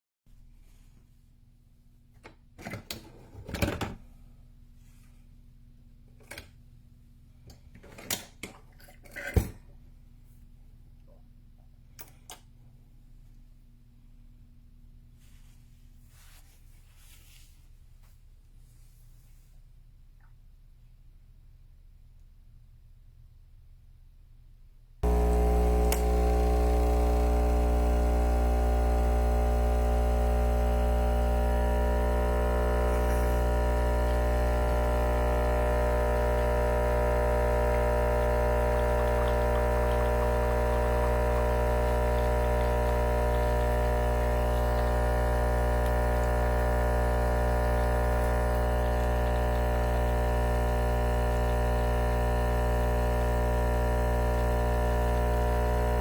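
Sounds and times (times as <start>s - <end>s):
espresso machine pump humming: 25.0s - 56.0s.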